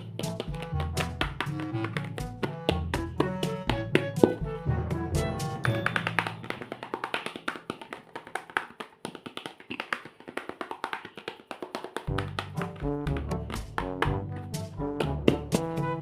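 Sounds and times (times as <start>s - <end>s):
background music: 0.0s - 8.2s, 12.0s - 16.0s.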